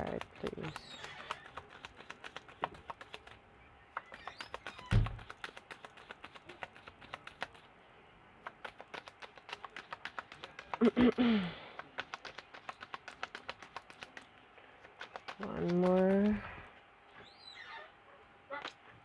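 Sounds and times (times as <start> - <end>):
cards being shuffled: 0.0 - 7.7, 8.4 - 16.4.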